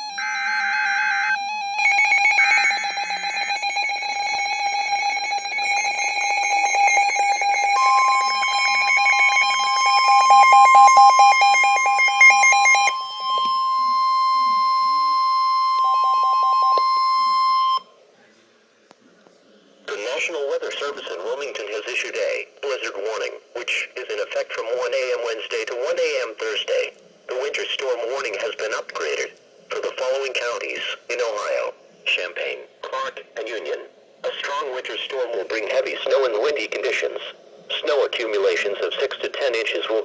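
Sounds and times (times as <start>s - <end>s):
steady alarm tones: 0.0s - 18.0s
buzzy data bursts: 1.8s - 12.9s
fast pulsing beep: 1.8s - 17.8s.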